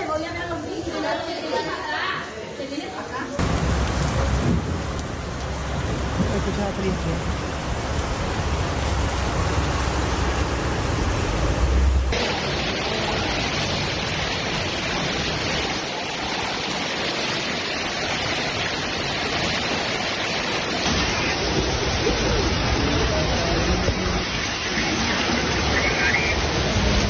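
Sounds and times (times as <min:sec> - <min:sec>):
floodwater rushing: 0:00.0 - 0:27.0
heavy rain: 0:00.0 - 0:27.0
wind rumble on microphone: 0:03.4 - 0:12.2.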